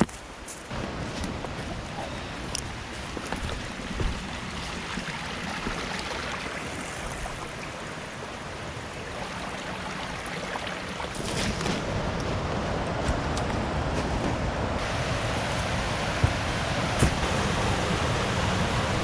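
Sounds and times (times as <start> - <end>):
fast-flowing creek rushing: 0.7 - 19.0.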